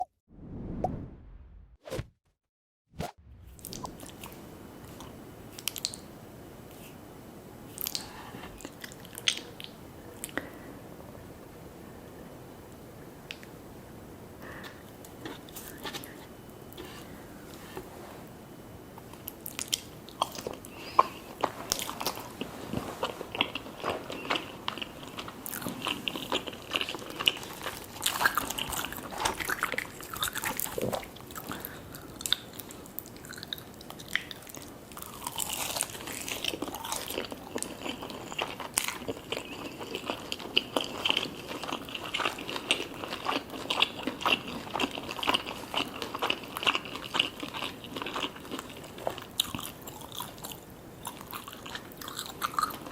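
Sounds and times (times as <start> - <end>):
chewing: 19.0 - 52.9
crunching fried chicken: 19.5 - 52.9.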